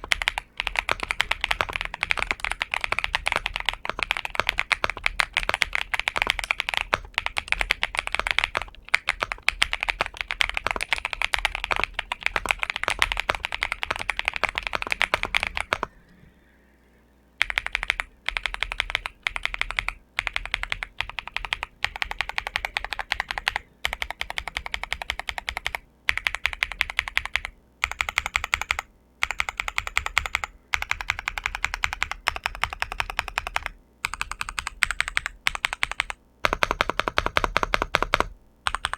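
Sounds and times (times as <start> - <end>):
mechanical keyboard typing: 0.0 - 15.9, 17.4 - 38.9.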